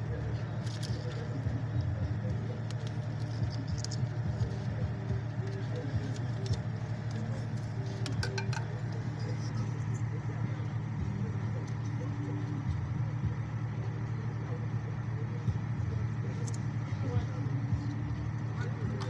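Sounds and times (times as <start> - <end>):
motor vehicle rumble: 0.0 - 19.0.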